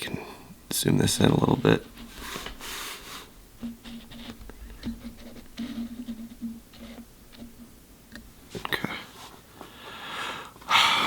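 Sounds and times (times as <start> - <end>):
faint low hum: 3.3 - 11.0.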